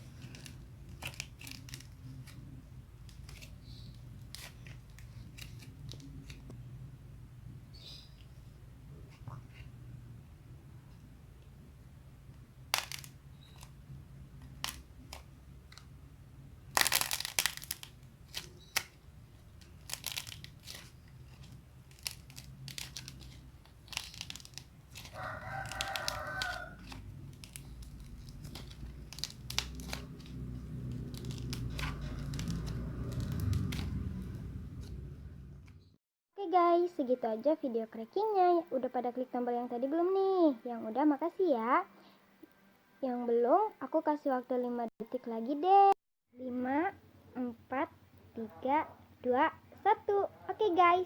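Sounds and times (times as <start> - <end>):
clay cracking as squeezed by hand: 0.0 - 2.5, 12.7 - 13.8, 14.4 - 15.9, 16.7 - 19.0, 19.6 - 34.0.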